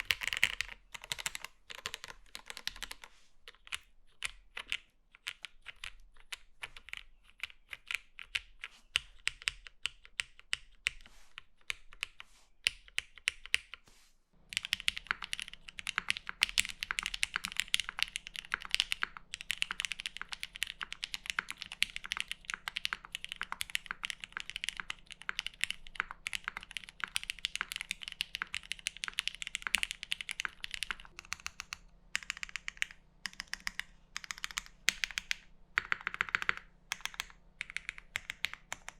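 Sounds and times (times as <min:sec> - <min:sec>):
fast mechanical keyboard typing: 0:00.0 - 0:11.0, 0:14.5 - 0:38.9.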